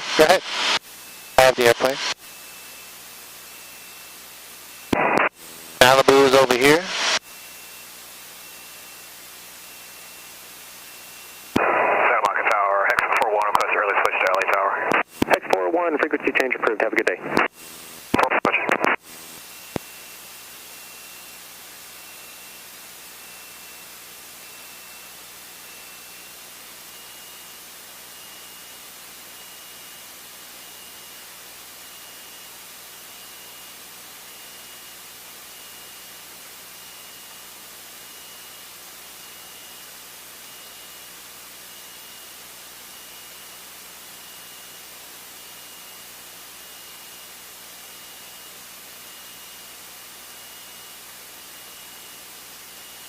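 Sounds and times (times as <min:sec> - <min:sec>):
headset intercom hiss: 0:00.0 - 0:00.8, 0:01.4 - 0:02.2, 0:05.0 - 0:07.2, 0:11.6 - 0:17.5, 0:18.1 - 0:19.0
thin steady whine: 0:00.0 - 0:53.0.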